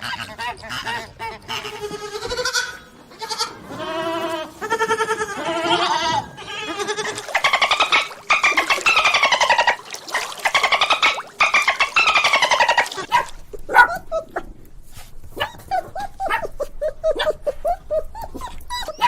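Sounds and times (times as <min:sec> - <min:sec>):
goats bleating: 0:01.6 - 0:07.8.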